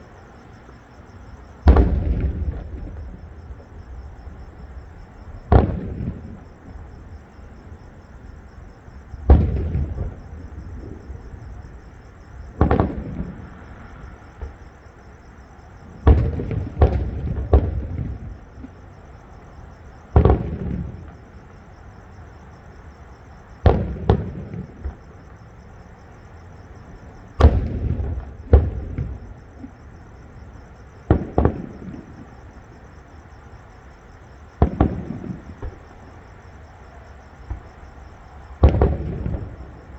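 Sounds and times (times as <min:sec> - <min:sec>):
fireworks banging: 0:01.6 - 0:03.7, 0:05.5 - 0:06.8, 0:12.6 - 0:13.4, 0:27.4 - 0:29.8, 0:31.1 - 0:32.2, 0:34.6 - 0:35.8, 0:38.6 - 0:39.9.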